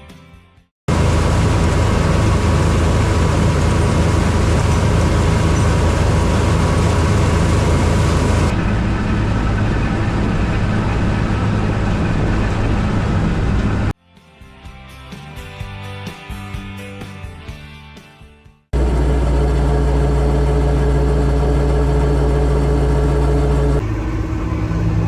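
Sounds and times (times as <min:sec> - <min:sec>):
heavy machinery engine rumble: 0:00.9 - 0:13.9, 0:18.8 - 0:25.0.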